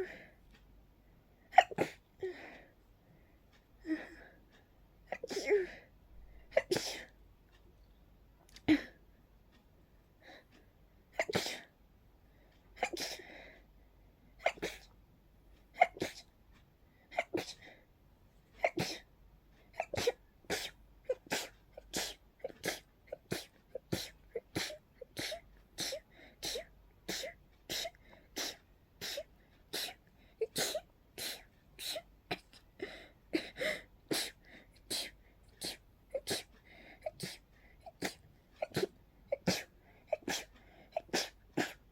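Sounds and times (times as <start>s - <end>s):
person sneezing: 38.0s - 41.8s.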